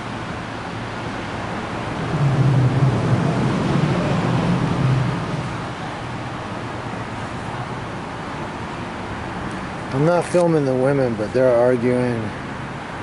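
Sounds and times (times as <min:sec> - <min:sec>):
car engine hum: 0:00.0 - 0:10.0
wet traffic: 0:00.0 - 0:13.0
rain hissing: 0:01.4 - 0:07.5.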